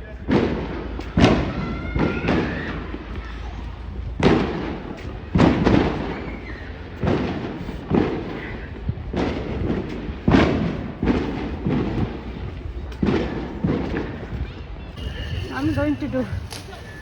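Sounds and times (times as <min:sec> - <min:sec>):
heavy bangs: 0:00.0 - 0:17.0.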